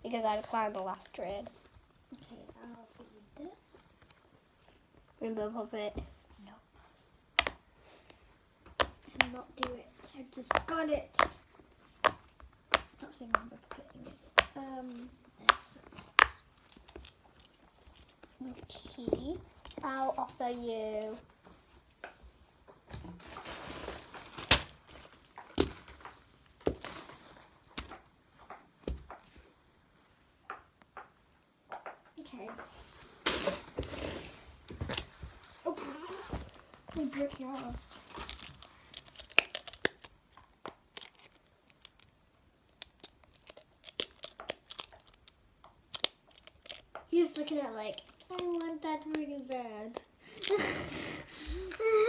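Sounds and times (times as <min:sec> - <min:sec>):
plastic toys clicking and rustling: 0:08.7 - 0:21.2, 0:34.7 - 0:52.0.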